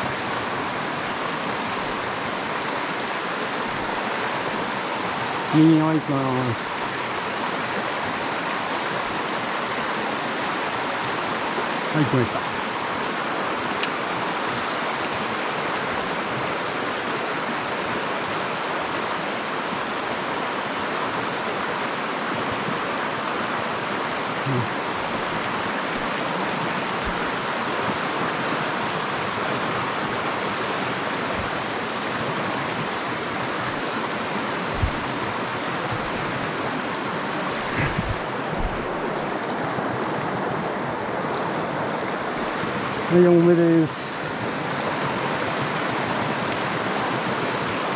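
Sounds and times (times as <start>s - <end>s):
stream running over riffles: 0.0s - 47.9s
low knocks: 34.7s - 35.2s, 37.6s - 39.0s.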